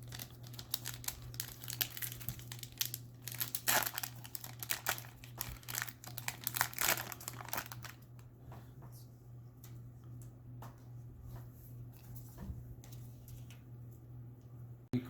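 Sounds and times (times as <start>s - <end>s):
wrapper crinkling and tearing: 0.0s - 8.2s.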